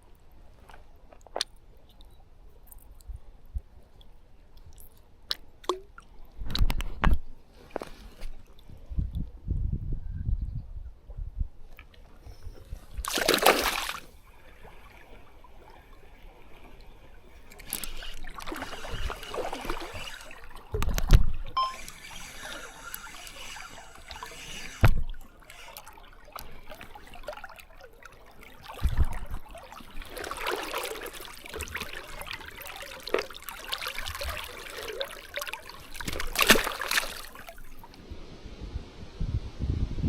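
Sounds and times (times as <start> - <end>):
river water trickling and splashing: 11.8 - 38.0.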